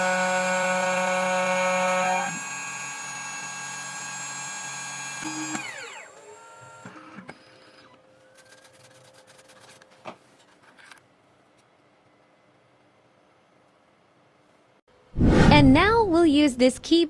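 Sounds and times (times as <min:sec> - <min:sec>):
cutter spindle whining and spinning down: 0:00.0 - 0:08.0.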